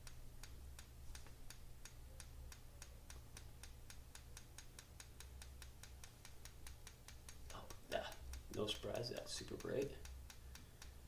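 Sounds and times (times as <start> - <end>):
low steady hum: 0.0 - 11.0
strobe light ticking: 0.0 - 11.0.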